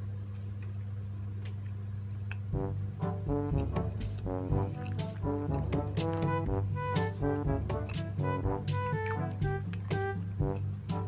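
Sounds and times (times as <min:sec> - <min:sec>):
upbeat instrumental music: 0:02.6 - 0:11.0.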